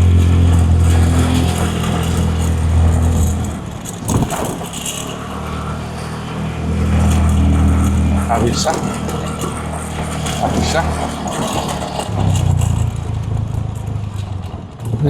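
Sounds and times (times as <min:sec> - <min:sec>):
vehicle engine humming: 0:00.0 - 0:15.0.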